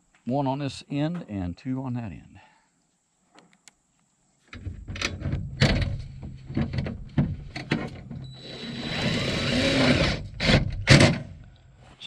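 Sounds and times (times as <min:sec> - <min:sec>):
metal knocks and clanks: 0:04.6 - 0:08.3, 0:10.3 - 0:11.4.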